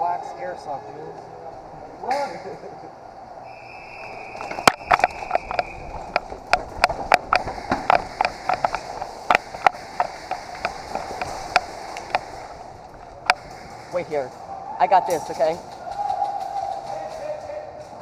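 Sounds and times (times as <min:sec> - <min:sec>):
quick running footsteps: 0:03.9 - 0:14.0.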